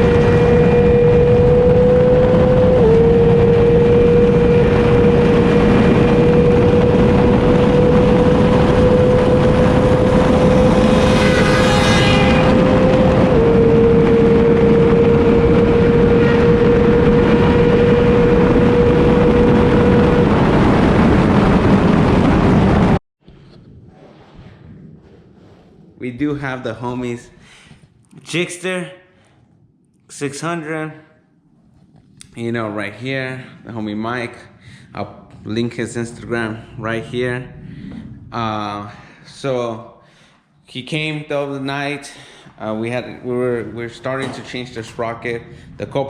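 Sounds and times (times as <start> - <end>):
motorcycle engine cruising: 0.0 - 22.9
wind rushing over microphone: 0.0 - 40.0, 40.9 - 46.0.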